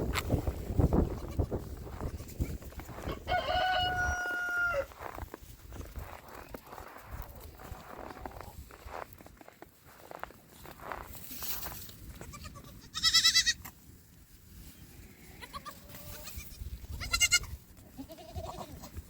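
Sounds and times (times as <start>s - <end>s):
goats bleating: 12.2s - 13.6s, 15.2s - 19.0s.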